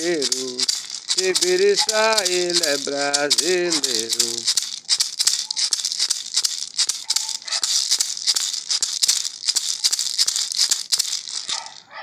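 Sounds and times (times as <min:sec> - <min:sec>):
person chanting: 0:00.0 - 0:04.4
hand rattle shaking: 0:00.0 - 0:11.9.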